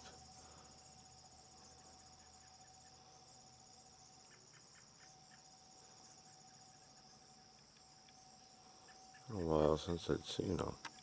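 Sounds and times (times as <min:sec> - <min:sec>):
faint ticks: 0:10.7 - 0:11.0.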